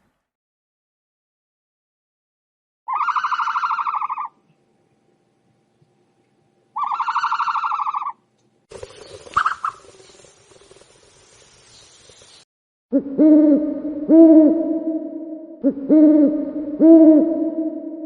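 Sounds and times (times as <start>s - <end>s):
bird pulsing calls: 2.9s - 4.4s, 6.8s - 12.4s
background hiss: 8.7s - 12.4s.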